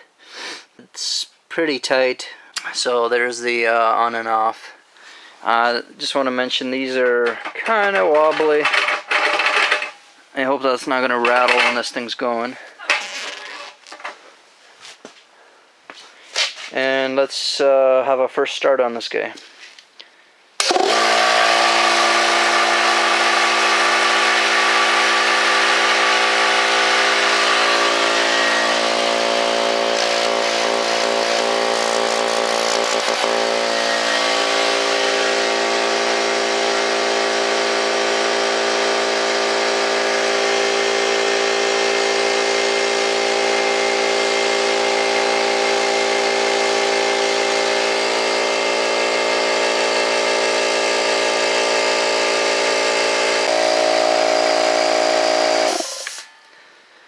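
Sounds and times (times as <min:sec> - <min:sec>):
air compressor running: 0:07.1 - 0:10.0, 0:20.6 - 0:56.4.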